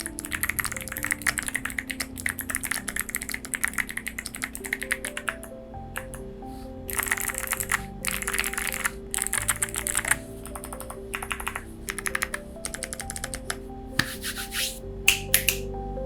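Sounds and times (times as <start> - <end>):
fast typing on mechanical keyboard: 0.0 - 5.4, 6.9 - 14.2
soft background music: 0.0 - 16.0.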